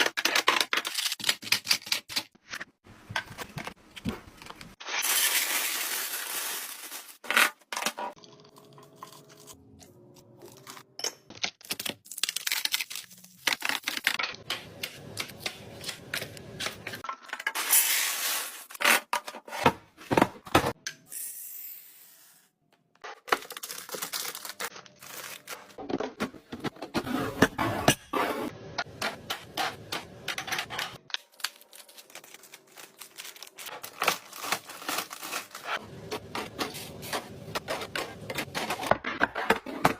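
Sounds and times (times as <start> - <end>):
packaging rustling and scraping: 4.8 - 8.2, 30.7 - 38.9.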